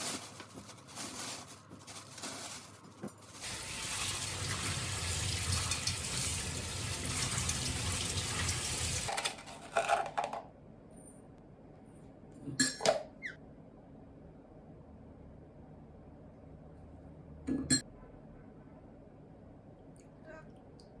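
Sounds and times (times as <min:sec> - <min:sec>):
tap water running into sink: 0:03.4 - 0:09.2.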